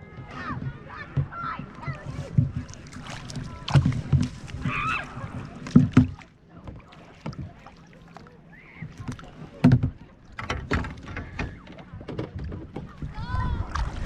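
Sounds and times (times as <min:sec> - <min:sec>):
knocks against kayak hull: 0:05.6 - 0:07.6.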